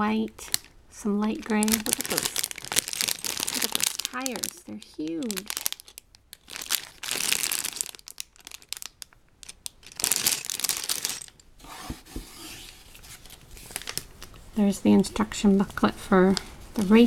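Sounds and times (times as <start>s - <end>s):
plastic bag crinkling: 0.0s - 11.4s, 13.0s - 14.5s.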